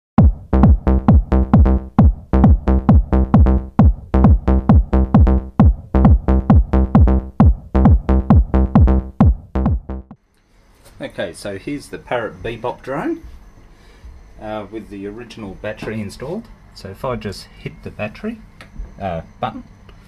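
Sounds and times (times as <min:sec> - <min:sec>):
electronic dance music: 0:00.2 - 0:10.2.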